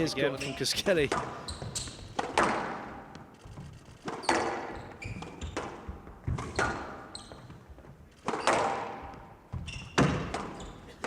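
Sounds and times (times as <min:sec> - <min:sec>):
shoes squeaking on court floor: 0:00.0 - 0:11.0
squash ball cracking off racket and wall: 0:08.2 - 0:09.3.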